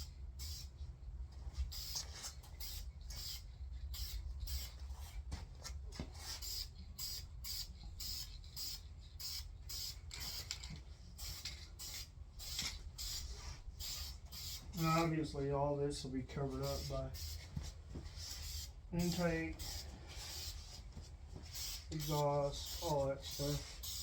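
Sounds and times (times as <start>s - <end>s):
aerosol paint can spraying: 0.4s - 0.7s, 1.7s - 4.8s, 6.1s - 10.6s, 11.2s - 15.1s, 16.6s - 24.0s.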